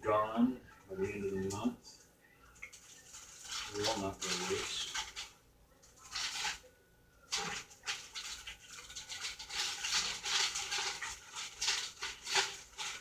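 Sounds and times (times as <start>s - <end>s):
plastic bags crinkling: 2.6s - 6.7s, 7.3s - 13.0s.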